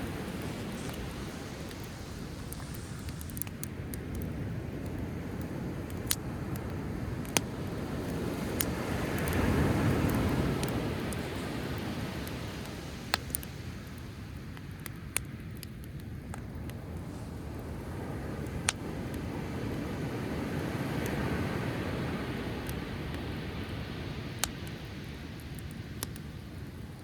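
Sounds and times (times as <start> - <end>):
sea waves: 0.0 - 13.7
campfire crackling and popping: 0.0 - 27.0.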